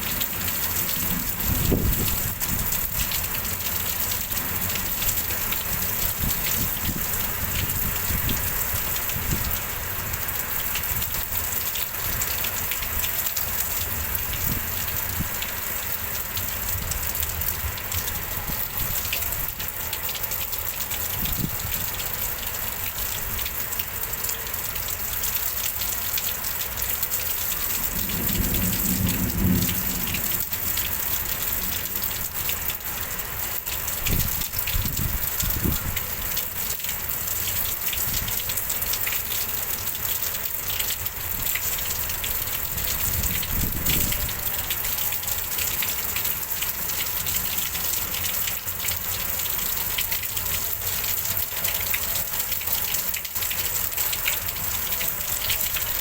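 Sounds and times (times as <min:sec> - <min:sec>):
heavy rain pouring: 0:00.0 - 0:56.0
wind gusts buffeting microphone: 0:01.3 - 0:03.1.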